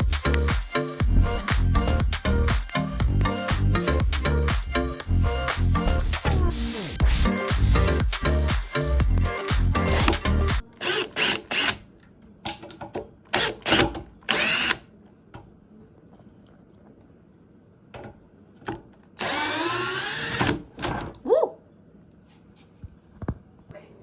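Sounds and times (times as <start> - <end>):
cordless drill driving screws: 10.8 - 11.8, 13.3 - 14.8, 19.2 - 20.7.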